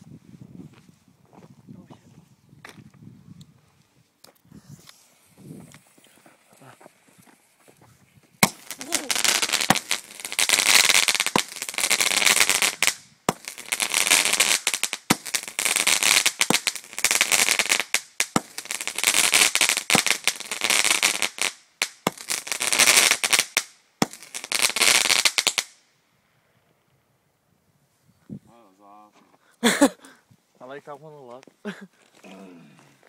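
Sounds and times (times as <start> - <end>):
firework bangs: 8.4 - 25.7
firework crackling and popping: 8.4 - 25.8.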